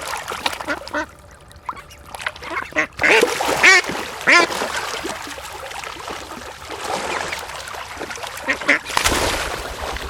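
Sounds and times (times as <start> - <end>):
ducks quacking: 0.6 - 4.6, 8.4 - 8.9.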